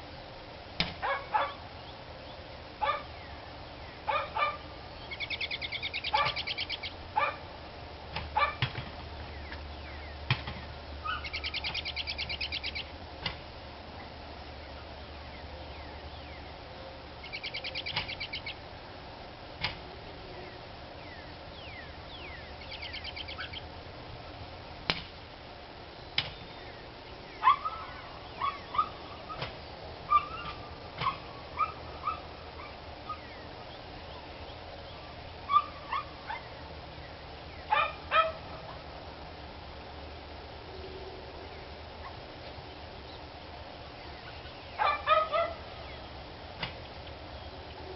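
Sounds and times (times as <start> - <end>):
dog barking: 1.0 - 1.6, 2.8 - 3.1, 4.1 - 4.6, 6.1 - 6.4, 7.2 - 7.4, 8.4 - 8.6, 27.4 - 29.0, 30.1 - 32.8, 35.5 - 36.5, 37.7 - 38.8, 44.8 - 45.6.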